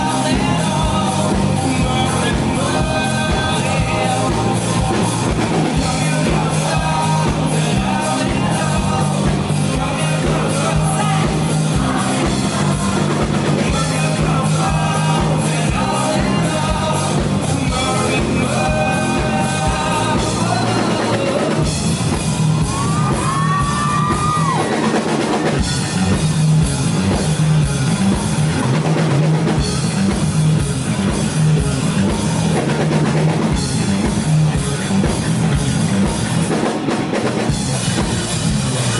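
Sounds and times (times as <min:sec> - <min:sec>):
person singing: 0:00.0 - 0:22.0
rock band playing live: 0:00.0 - 0:38.9.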